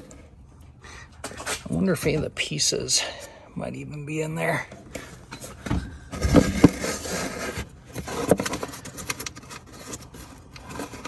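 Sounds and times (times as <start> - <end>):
hands scraping plastic box: 6.2 - 11.0.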